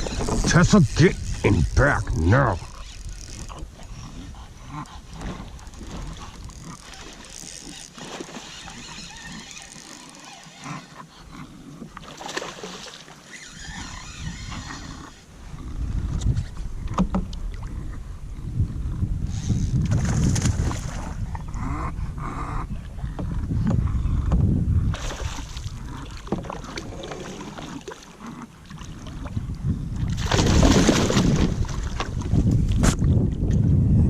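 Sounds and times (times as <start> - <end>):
knocks and rustles on kayak hull: 0.0 - 2.0, 5.1 - 8.9, 16.1 - 17.6, 23.1 - 27.8, 30.0 - 33.6.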